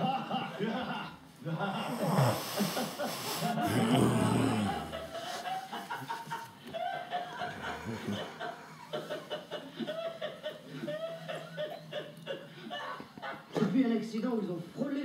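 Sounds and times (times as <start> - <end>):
person snickering and chuckling: 1.6 - 13.4
loud snore: 1.7 - 5.4, 7.4 - 8.9.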